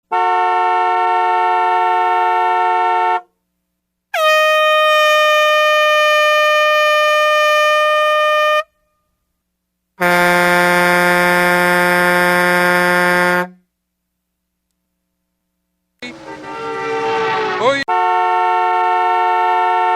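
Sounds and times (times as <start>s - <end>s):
horn blasts: 0.1s - 3.3s, 16.0s - 19.9s.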